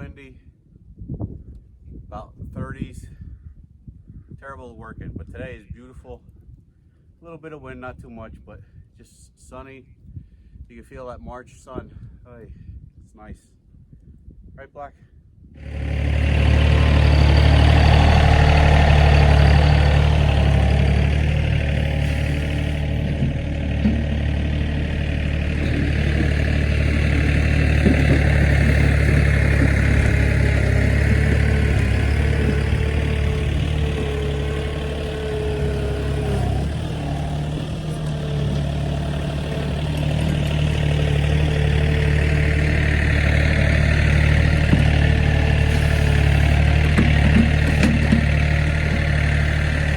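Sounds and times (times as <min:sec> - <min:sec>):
farm machine engine running: 0:15.6 - 0:49.9
faint clatter: 0:17.0 - 0:35.6, 0:36.2 - 0:42.1, 0:43.0 - 0:49.9.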